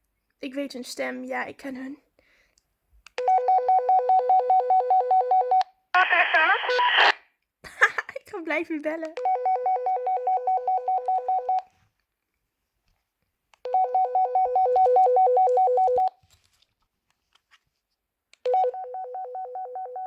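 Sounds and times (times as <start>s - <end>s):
toy walkie-talkie warbling tone: 6.0s - 7.2s.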